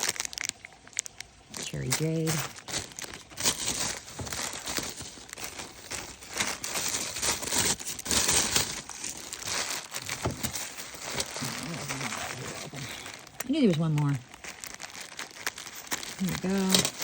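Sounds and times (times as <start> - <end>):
plastic packaging crinkling: 0.0 - 17.0.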